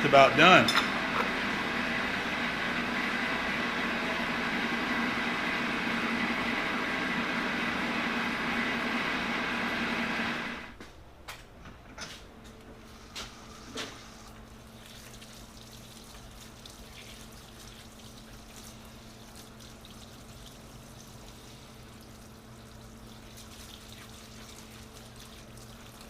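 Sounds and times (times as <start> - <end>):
electric motor humming and whining: 0.0 - 10.8.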